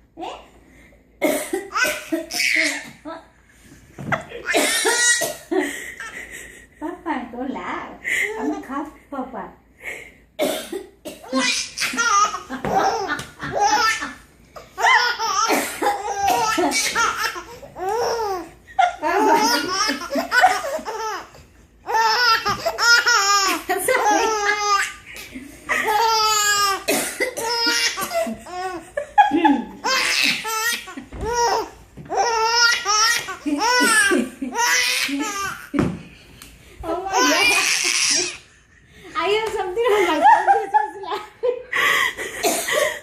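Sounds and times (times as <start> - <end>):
baby laughing: 1.7 - 3.0, 11.2 - 35.8, 37.0 - 38.6.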